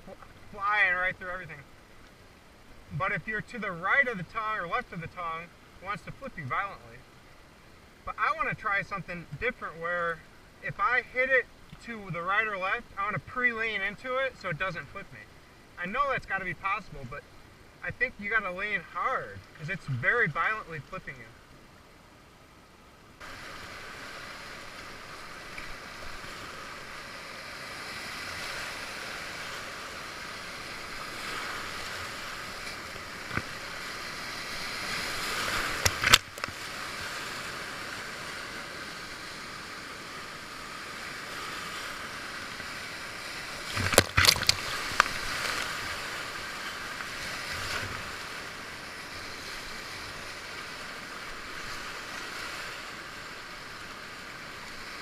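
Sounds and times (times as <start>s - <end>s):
river water rushing: 0.0s - 55.0s
sharp water splashes: 43.4s - 46.4s.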